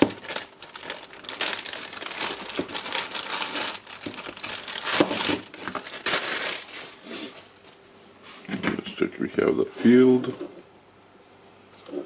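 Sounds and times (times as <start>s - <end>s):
plastic packaging crinkling: 0.0s - 7.6s.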